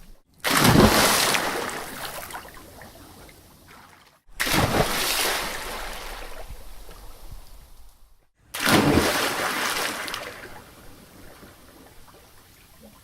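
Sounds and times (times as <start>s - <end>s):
splash into swimming pool: 0.4s - 2.6s, 3.8s - 6.5s, 8.5s - 10.6s.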